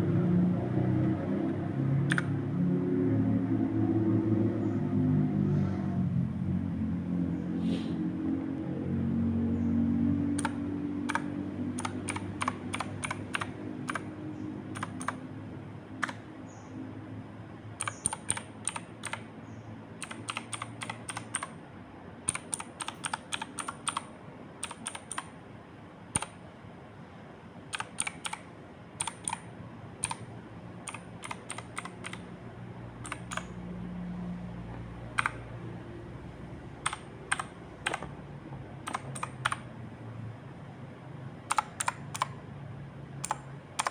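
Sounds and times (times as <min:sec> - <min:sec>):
typing on mechanical keyboard: 0:02.1 - 0:02.3, 0:10.3 - 0:15.3, 0:16.0 - 0:16.2, 0:17.8 - 0:19.3, 0:20.0 - 0:21.6, 0:22.3 - 0:25.3, 0:26.2 - 0:26.4, 0:27.7 - 0:32.3, 0:33.0 - 0:33.6, 0:35.1 - 0:35.5, 0:36.8 - 0:38.1, 0:38.8 - 0:39.7, 0:41.5 - 0:42.4, 0:43.2 - 0:43.9.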